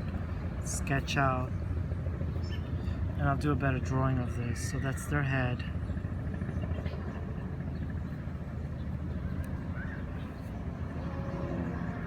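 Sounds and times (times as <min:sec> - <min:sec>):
low outdoor rumble: 0:00.0 - 0:12.0.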